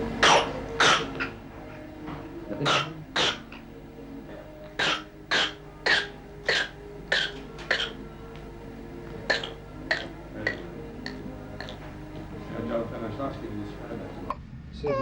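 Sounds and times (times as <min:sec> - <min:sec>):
child coughing: 0:00.2 - 0:01.4, 0:02.6 - 0:03.6, 0:04.8 - 0:08.0, 0:09.3 - 0:11.8.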